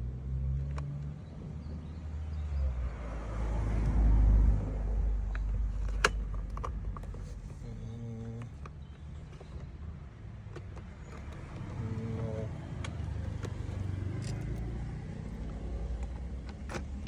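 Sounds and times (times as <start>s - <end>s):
plastic lock parts clicking: 5.4s - 9.7s, 10.5s - 14.7s
motor vehicle passing: 10.9s - 17.0s.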